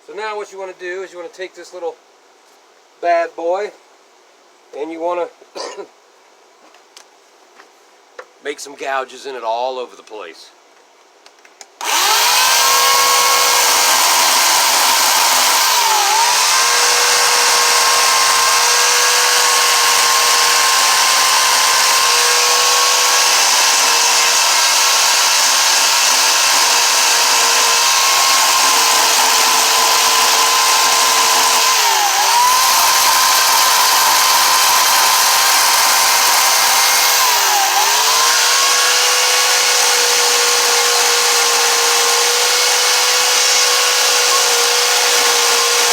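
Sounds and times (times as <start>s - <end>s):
power carving tool whining: 11.8s - 45.9s.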